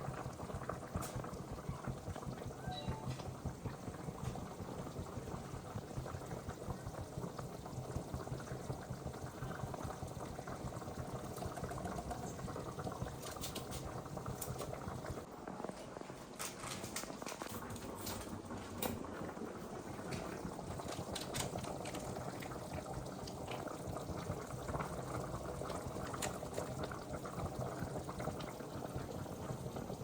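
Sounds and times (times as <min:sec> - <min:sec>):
curry bubbling in a pot: 0:00.0 - 0:02.6, 0:03.2 - 0:30.0.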